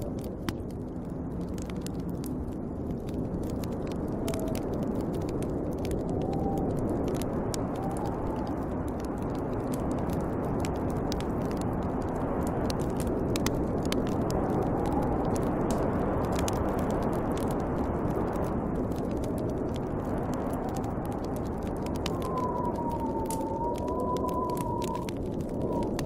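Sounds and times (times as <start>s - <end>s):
fire crackling: 0.0s - 26.0s
whistling wind: 3.3s - 26.0s
wind rushing: 3.9s - 9.3s, 14.1s - 15.7s, 20.0s - 26.0s.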